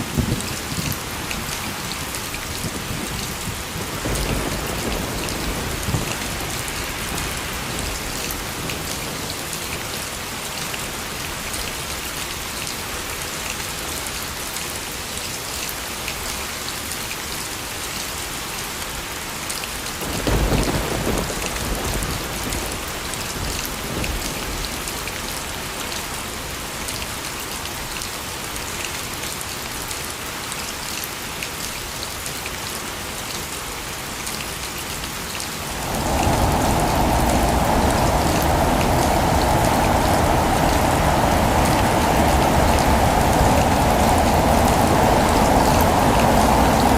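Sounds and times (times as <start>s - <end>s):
thunder rumbling: 0.0s - 9.6s, 20.0s - 24.8s, 35.6s - 46.9s
heavy rain falling: 0.0s - 46.9s.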